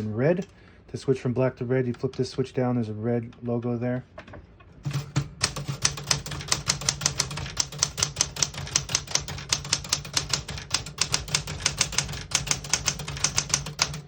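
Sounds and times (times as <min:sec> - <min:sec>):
manual typewriter typing: 0:04.8 - 0:14.0.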